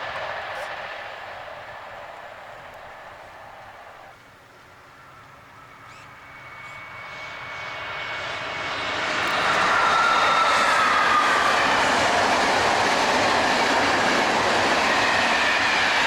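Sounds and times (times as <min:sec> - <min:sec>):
high train whine: 0:00.0 - 0:16.0
train approaching: 0:00.0 - 0:16.0.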